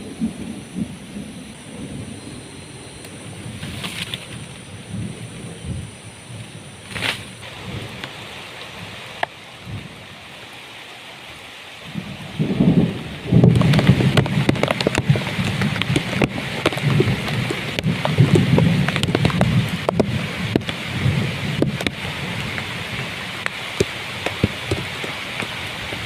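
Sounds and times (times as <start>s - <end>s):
deep rumble of thunder: 0.0s - 9.0s, 11.9s - 26.0s
steady rain falling: 0.0s - 26.0s
heavy drops pattering: 13.3s - 26.0s.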